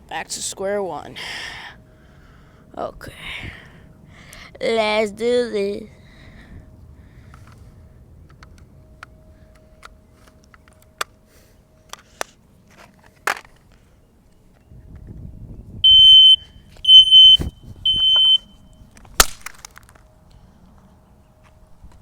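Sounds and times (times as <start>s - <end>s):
smoke alarm beeps: 15.8s - 18.8s.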